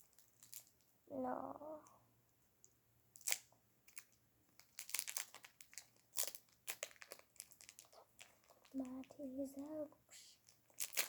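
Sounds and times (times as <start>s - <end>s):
plastic packaging crinkling: 0.0s - 0.8s, 3.2s - 9.8s, 10.4s - 11.0s.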